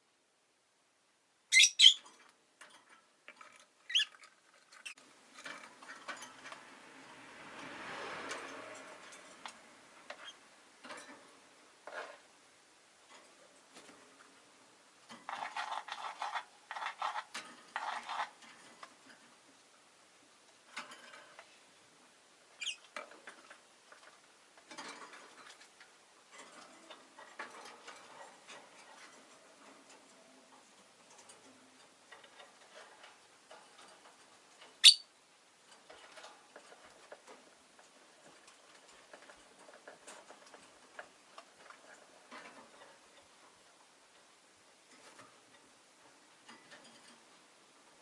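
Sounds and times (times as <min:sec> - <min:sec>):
lovebird chattering: 0:01.5 - 0:02.0, 0:03.9 - 0:04.1, 0:22.6 - 0:22.8, 0:34.8 - 0:35.1
sharp high bird chirp: 0:01.5 - 0:02.0, 0:34.8 - 0:35.1
faint clicks and scratches: 0:02.0 - 0:34.8, 0:35.5 - 0:48.0.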